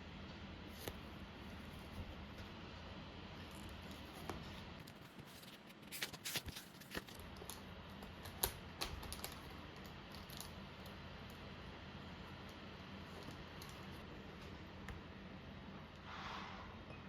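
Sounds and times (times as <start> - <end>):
small objects clicking and tapping: 6.5 - 11.0.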